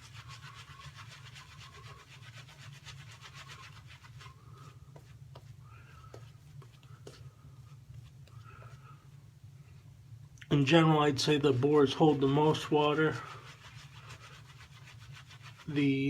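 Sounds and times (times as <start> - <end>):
shaving brush scrubbing lather: 0.0 - 4.7, 10.7 - 16.0.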